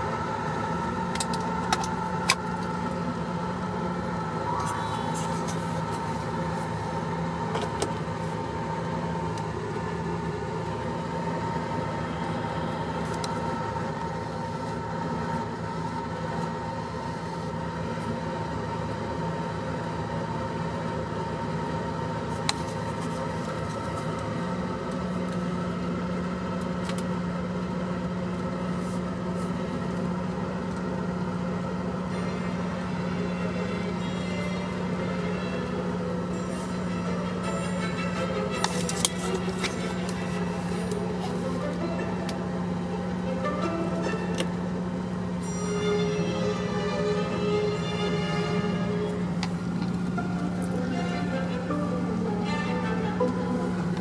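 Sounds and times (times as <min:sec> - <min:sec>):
car engine idling: 0:00.0 - 0:54.0.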